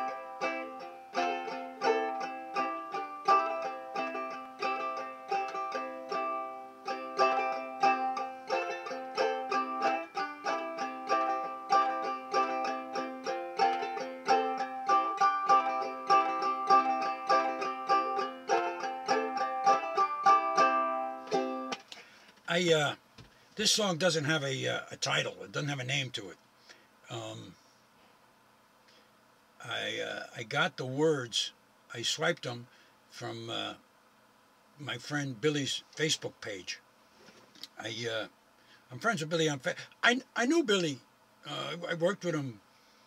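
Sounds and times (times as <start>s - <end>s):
banjo ukulele strumming: 0.0s - 21.8s.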